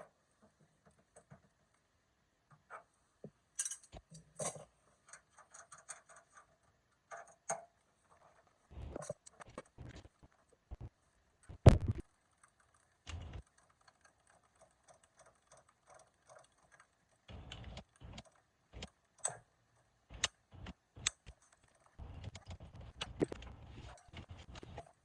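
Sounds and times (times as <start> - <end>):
tools clicking and knocking: 3.6 - 7.7.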